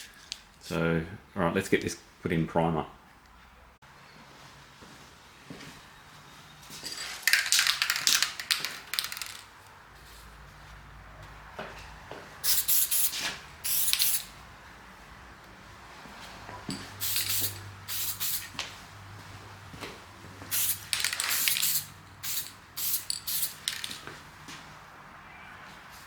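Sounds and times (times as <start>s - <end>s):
spray can hissing: 12.4s - 14.3s, 17.0s - 18.5s, 20.5s - 24.0s.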